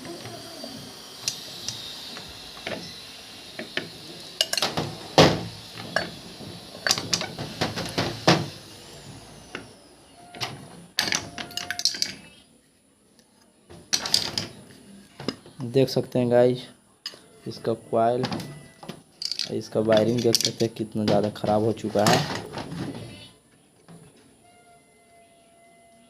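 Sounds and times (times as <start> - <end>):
metal parts clicking and clinking: 4.4 - 4.8, 5.7 - 8.0, 10.4 - 12.3, 13.9 - 14.6, 19.2 - 22.5.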